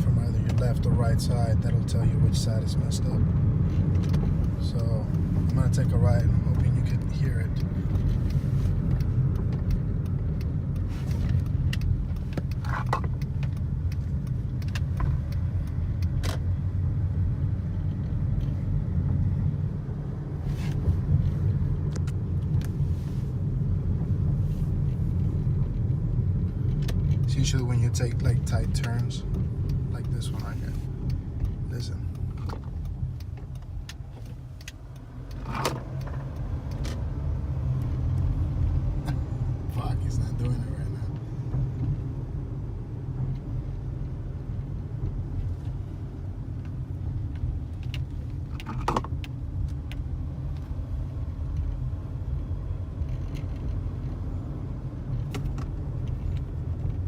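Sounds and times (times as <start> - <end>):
car road rumble: 0.0 - 57.0
sharp clicks: 3.8 - 16.9, 25.5 - 39.2.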